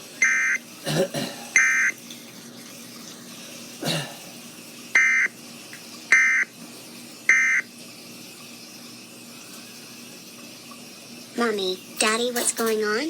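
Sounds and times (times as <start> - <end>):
alert data tone bursts: 0.2 - 0.6, 1.6 - 1.9, 5.0 - 5.3, 6.1 - 6.5, 7.3 - 7.7.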